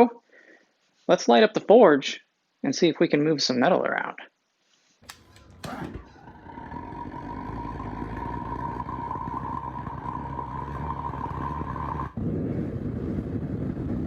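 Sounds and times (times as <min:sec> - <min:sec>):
forge roar with high whine: 0:05.0 - 0:14.0
low steady forge roar: 0:05.0 - 0:14.0.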